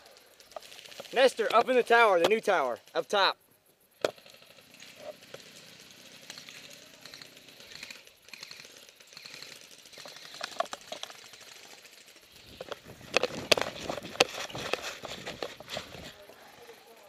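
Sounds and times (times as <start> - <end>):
faint rustling: 8.7 - 17.0.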